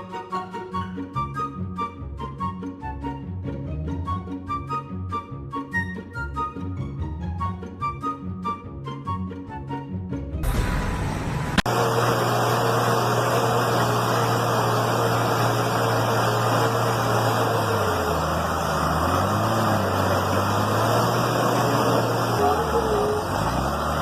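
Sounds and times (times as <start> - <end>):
engine running: 10.4 - 24.0.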